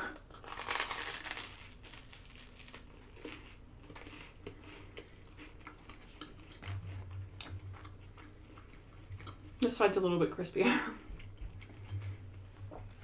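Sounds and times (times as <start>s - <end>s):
toast being chewed: 0.3s - 9.6s
low hum: 6.2s - 13.0s.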